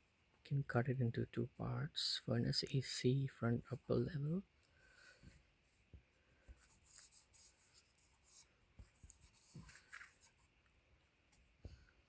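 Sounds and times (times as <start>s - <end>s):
scratchy rustling of small items: 3.7s - 12.0s.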